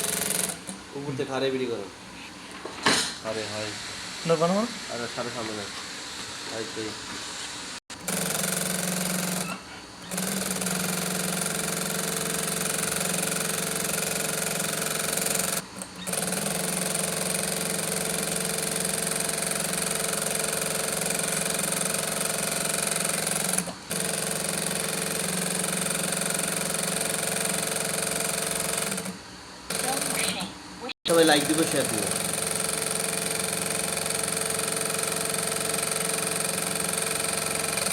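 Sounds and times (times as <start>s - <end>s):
sewing machine running: 0.0s - 0.8s, 7.9s - 30.5s, 31.1s - 37.9s.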